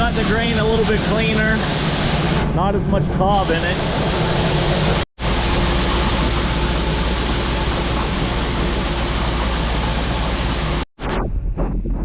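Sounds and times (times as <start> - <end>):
low hum: 0.0 - 12.0
combine harvester machinery rushing: 0.1 - 10.9
grain moving through machine: 4.7 - 10.8.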